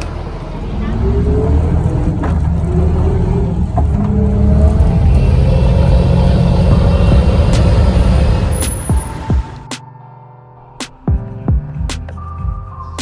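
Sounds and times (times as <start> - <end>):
bus engine rumbling: 0.0 - 9.7.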